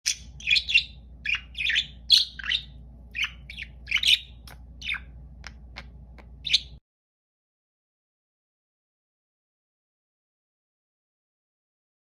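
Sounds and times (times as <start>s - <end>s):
budgerigars chirping: 0.0s - 6.8s
faint low hum: 0.1s - 6.8s.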